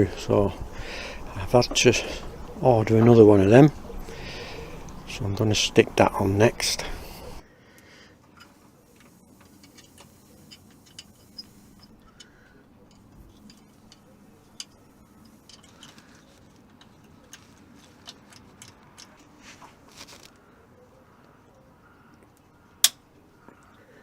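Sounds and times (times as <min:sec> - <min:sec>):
metallic clicks and taps of tools: 0:08.2 - 0:19.3, 0:22.1 - 0:23.0.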